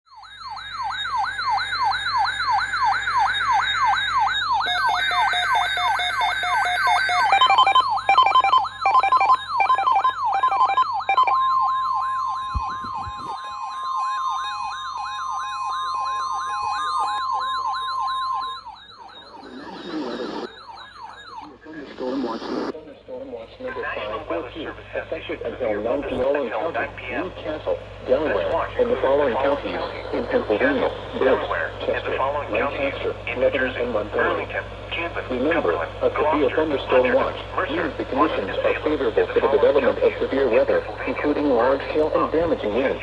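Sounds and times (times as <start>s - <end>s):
electronic siren wailing: 0.1s - 22.8s, 25.6s - 34.3s, 36.3s - 43.0s
steady alert tone: 4.6s - 22.6s.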